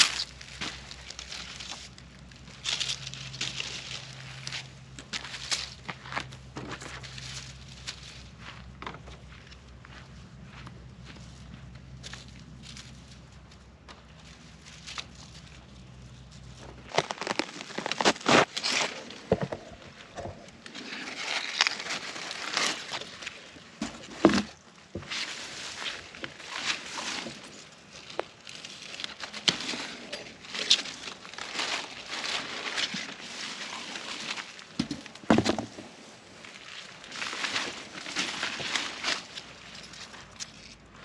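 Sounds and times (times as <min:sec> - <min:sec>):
vines rustling: 0:00.0 - 0:41.0.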